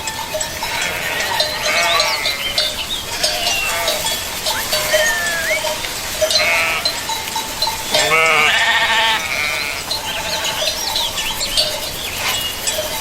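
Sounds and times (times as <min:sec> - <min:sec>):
livestock bells ringing: 0:00.0 - 0:13.0
sheep bleating: 0:00.7 - 0:02.6, 0:03.2 - 0:07.0, 0:07.9 - 0:10.7.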